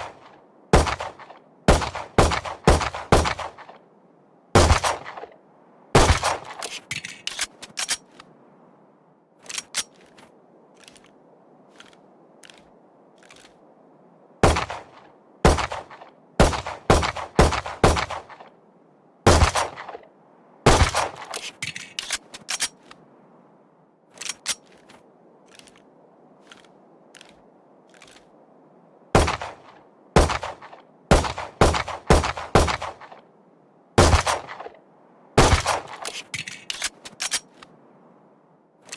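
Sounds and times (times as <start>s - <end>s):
faint clicks: 9.4s - 13.6s, 24.1s - 28.3s.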